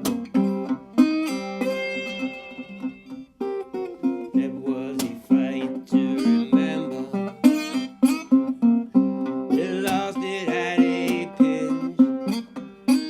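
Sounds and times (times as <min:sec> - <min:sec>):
slide guitar playing blues notes: 0:00.0 - 0:13.0.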